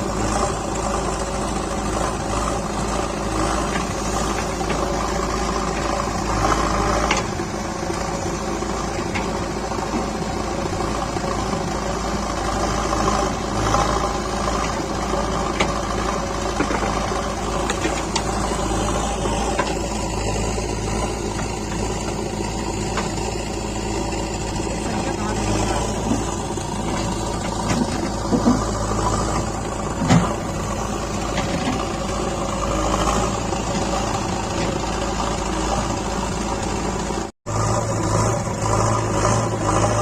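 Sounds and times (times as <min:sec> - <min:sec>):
diesel engine running: 0:00.0 - 0:40.0.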